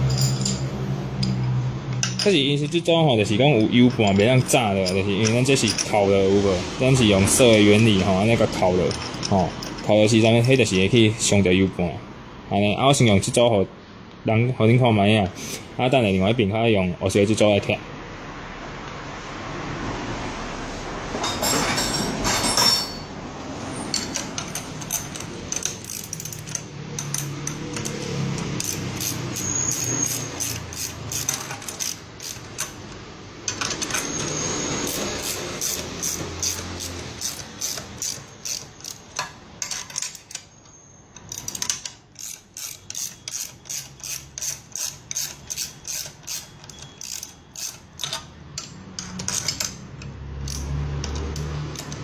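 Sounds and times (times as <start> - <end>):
ratchet wrench clicking: 3.6 - 6.0, 24.0 - 32.8, 34.8 - 40.5, 41.2 - 52.0.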